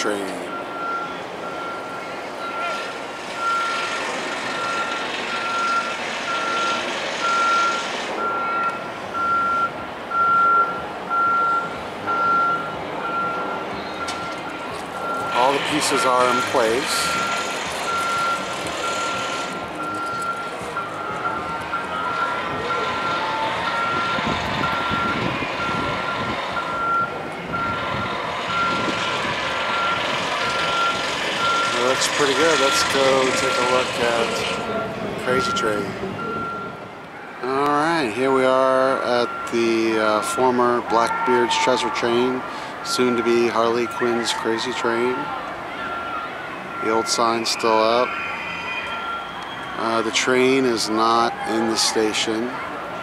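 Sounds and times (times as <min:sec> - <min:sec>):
outdoor background noise: 0:00.0 - 0:53.0
reversing vehicle back-up alarm: 0:00.0 - 0:53.0
rushing noise: 0:01.3 - 0:09.1, 0:11.6 - 0:37.3.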